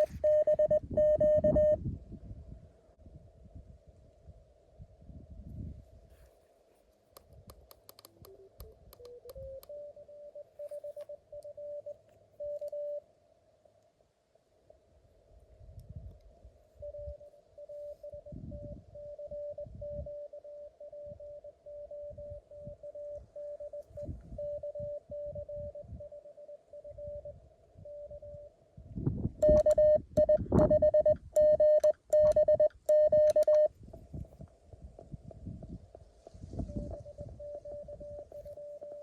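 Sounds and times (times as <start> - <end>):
morse code tones: 0.0 - 1.8, 8.2 - 13.0, 16.8 - 28.5, 29.4 - 33.7, 36.6 - 39.0.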